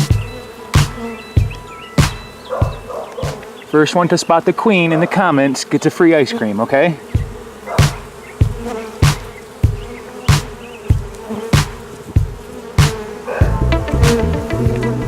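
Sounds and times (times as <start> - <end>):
bees buzzing: 0.0 - 15.0
soft thump with hiss: 7.2 - 13.1, 14.0 - 14.4.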